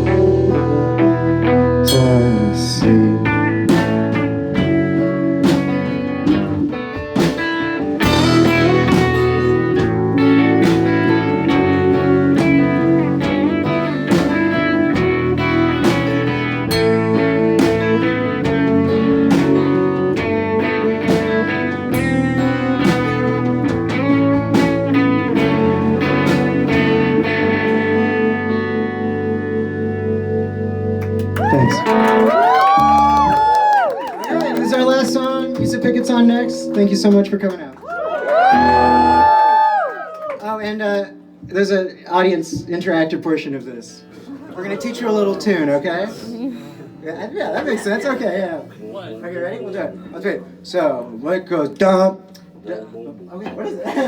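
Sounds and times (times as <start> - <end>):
live band playing: 0.0 - 41.7
guitar: 0.0 - 54.0.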